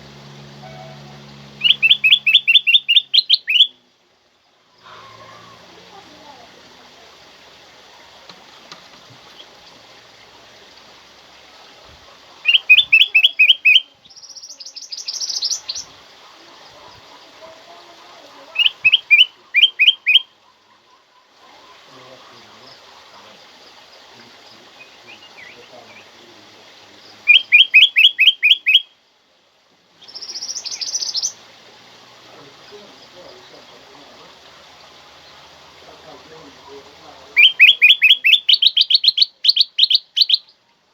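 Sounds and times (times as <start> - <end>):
bulbul calling: 0.0 - 3.9, 12.1 - 29.0, 30.0 - 31.5, 32.4 - 40.6
faint background hiss: 0.0 - 40.9
bird singing whistled notes and trill: 0.6 - 3.8, 12.5 - 16.0, 18.5 - 20.3, 27.1 - 29.0, 30.0 - 31.4, 37.4 - 40.6.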